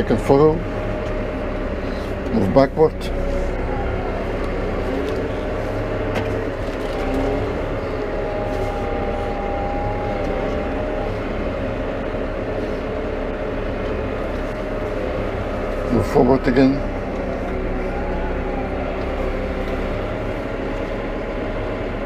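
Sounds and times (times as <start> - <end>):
faint whine: 0.0 - 22.0
tractor diesel engine running: 0.0 - 22.0.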